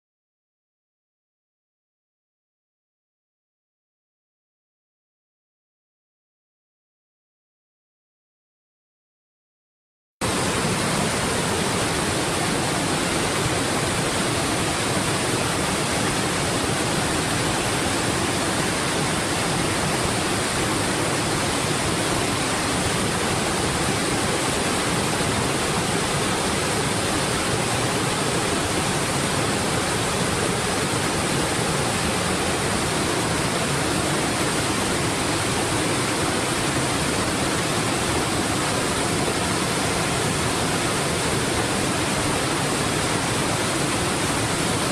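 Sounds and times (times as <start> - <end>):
waterfall rushing: 10.2 - 44.9.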